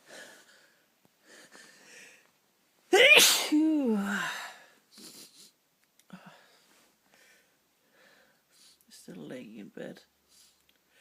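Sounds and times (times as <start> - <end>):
faint breaths in: 0.0 - 2.4, 6.1 - 8.9, 10.2 - 11.0
person sneezing: 2.9 - 4.4.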